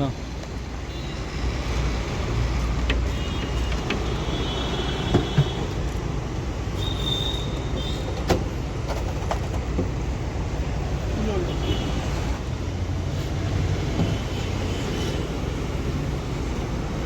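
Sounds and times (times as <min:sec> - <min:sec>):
sharp clicks and knocks: 0:02.6 - 0:04.2.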